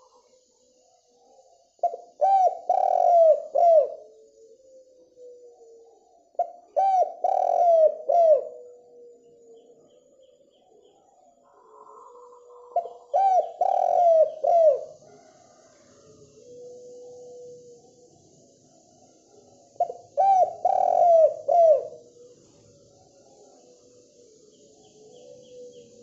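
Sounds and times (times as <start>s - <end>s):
dove cooing: 1.2s - 10.0s, 11.4s - 17.9s, 19.3s - 23.9s, 24.6s - 26.0s.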